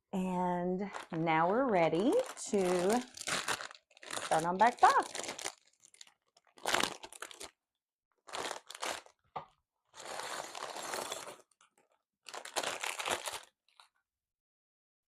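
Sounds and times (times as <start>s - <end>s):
plastic bags crinkling: 0.8s - 7.6s, 8.2s - 9.3s, 9.9s - 13.9s.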